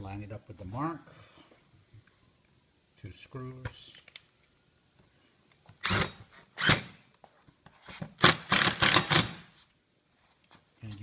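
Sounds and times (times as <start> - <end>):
power driver driving screws: 5.8 - 7.0, 8.2 - 9.4.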